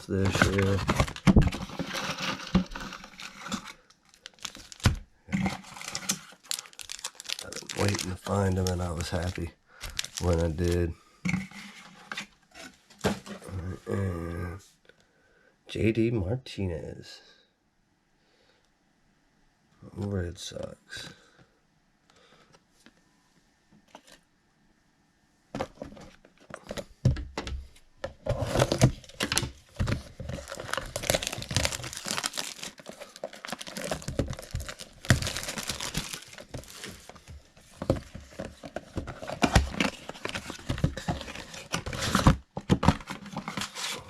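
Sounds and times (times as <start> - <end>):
plastic wrapping tearing and crinkling: 0.0 - 10.9, 28.3 - 37.2.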